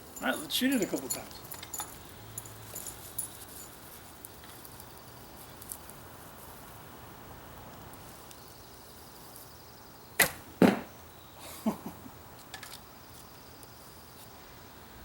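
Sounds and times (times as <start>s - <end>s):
bow string snapping: 10.2s - 10.8s
arrow thudding into target: 10.2s - 10.9s.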